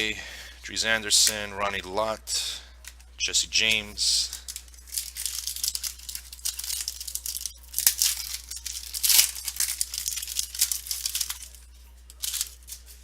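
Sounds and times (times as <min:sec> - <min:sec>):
trading cards rustling: 0:02.8 - 0:13.0.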